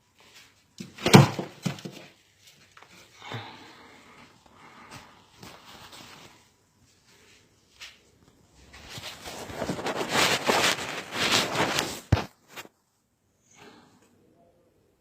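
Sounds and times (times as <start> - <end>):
rustling and scuffing: 0.0 - 3.1, 4.7 - 12.8.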